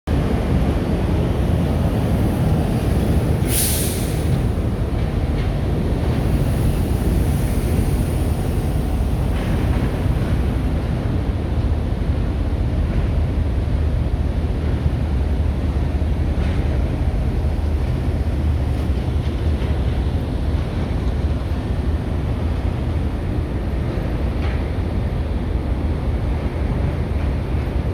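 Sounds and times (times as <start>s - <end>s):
traffic: 0.1s - 27.9s
sharp hiss: 3.4s - 4.6s.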